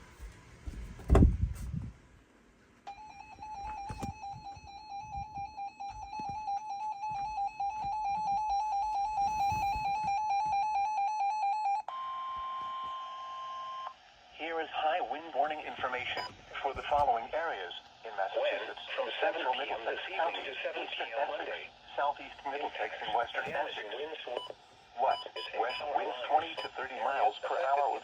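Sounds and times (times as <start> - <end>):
warbling emergency alert tone: 2.9 - 13.9.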